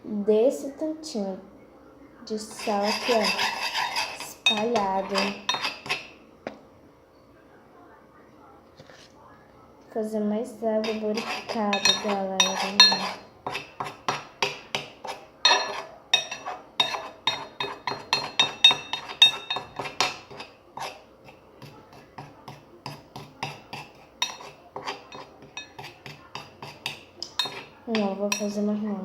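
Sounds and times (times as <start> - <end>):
spoon scraping a frying pan: 2.3 - 6.2, 10.8 - 28.7.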